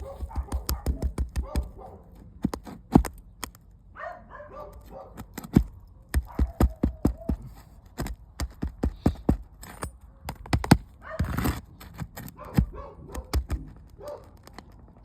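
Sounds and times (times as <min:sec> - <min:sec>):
dog barking: 0:00.0 - 0:02.2, 0:04.0 - 0:05.2, 0:06.2 - 0:07.5, 0:11.0 - 0:11.4, 0:12.3 - 0:14.4
hand tool knocking and scraping: 0:00.0 - 0:03.6, 0:04.8 - 0:14.7.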